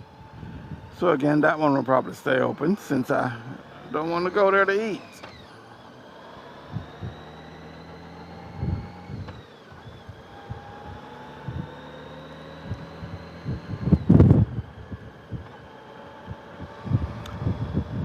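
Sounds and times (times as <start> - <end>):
wind buffeting microphone: 0.0 - 1.1, 6.7 - 7.4, 8.4 - 11.8, 12.6 - 15.5, 16.2 - 18.0
motorcycle engine running: 0.0 - 18.0.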